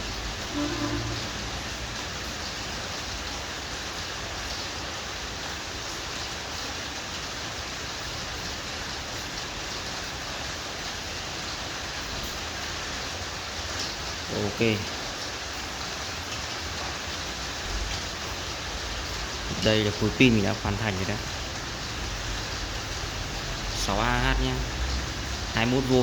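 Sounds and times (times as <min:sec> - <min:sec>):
steady hiss: 0:00.0 - 0:26.0.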